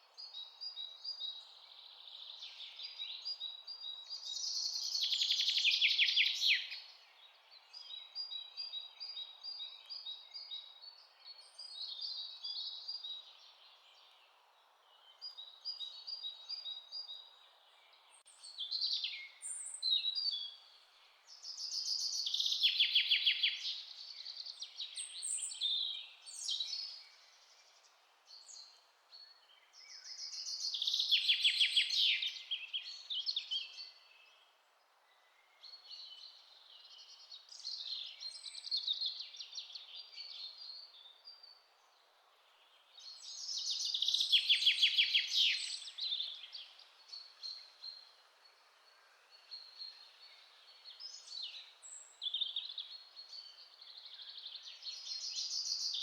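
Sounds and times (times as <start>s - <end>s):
faint steady hiss: 0.0s - 56.0s
songbird singing with falling trill: 0.0s - 56.0s.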